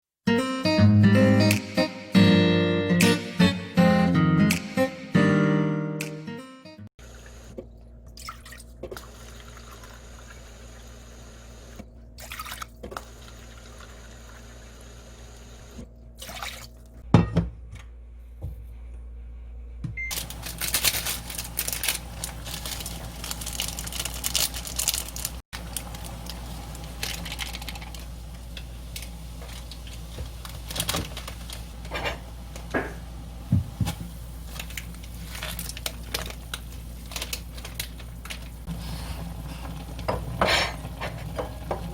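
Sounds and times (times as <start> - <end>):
crackling hiss with clicks: 23.4 - 31.7, 34.5 - 38.6.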